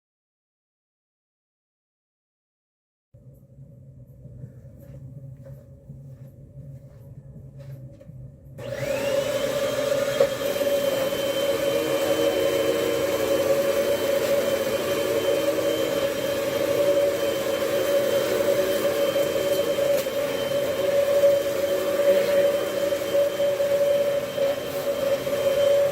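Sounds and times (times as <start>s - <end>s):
vacuum cleaner motor humming: 8.6s - 25.9s.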